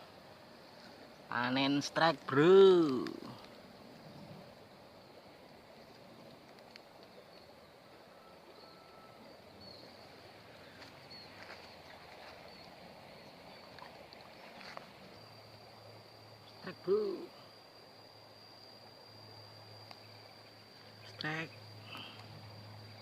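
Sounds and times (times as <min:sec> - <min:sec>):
high insect tone: 0:00.0 - 0:23.0
low steady hiss: 0:00.0 - 0:23.0
faint ticks: 0:02.8 - 0:04.1, 0:05.8 - 0:07.5, 0:19.8 - 0:21.2, 0:21.8 - 0:22.5.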